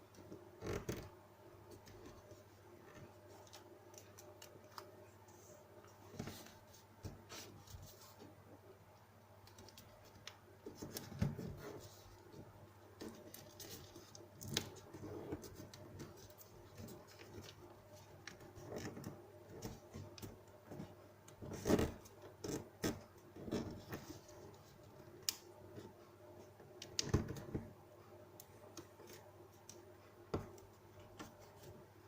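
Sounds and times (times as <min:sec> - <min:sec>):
paper folding and creasing: 0:13.0 - 0:25.4.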